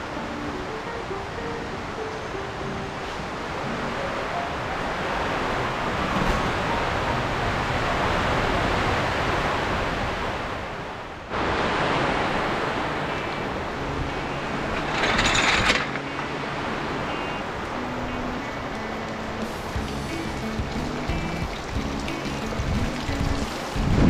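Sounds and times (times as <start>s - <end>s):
storm wind and rain: 0.0s - 24.0s.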